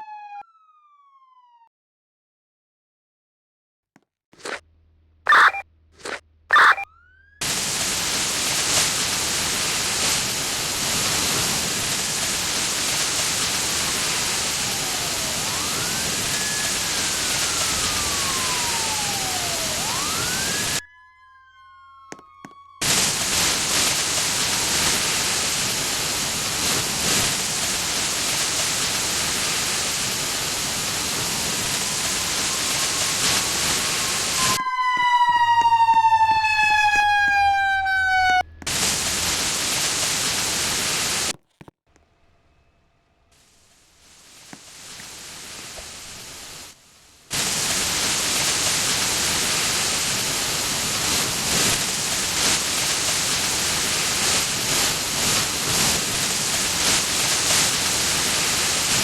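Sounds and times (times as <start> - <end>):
faint emergency siren wailing: 0.0 - 1.7, 5.3 - 5.6, 6.5 - 8.7, 13.2 - 26.2, 26.9 - 39.2
loud steady hiss: 7.4 - 20.8, 22.8 - 34.6, 38.7 - 41.3, 43.3 - 59.0.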